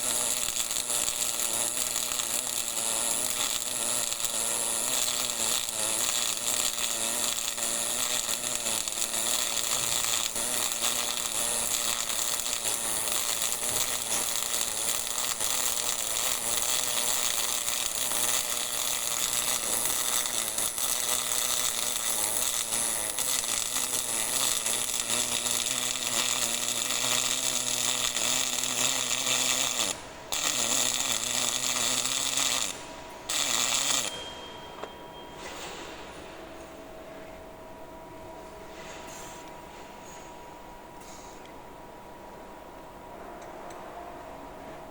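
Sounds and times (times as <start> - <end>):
welding arc crackling buzz: 0.0 - 34.8.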